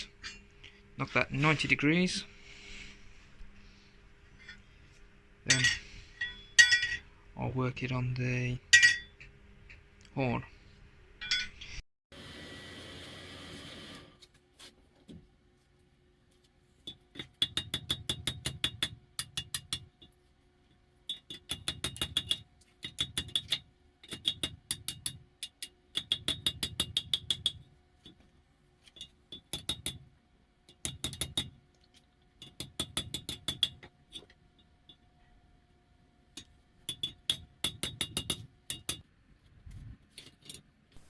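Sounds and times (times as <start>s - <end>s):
hammer ringing on hot steel: 5.5s - 7.0s, 8.7s - 9.2s.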